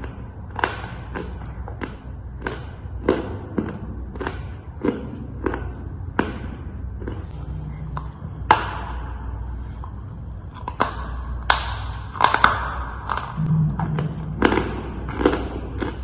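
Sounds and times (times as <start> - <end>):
dry chalk crunching and snapping: 10.3 - 16.0.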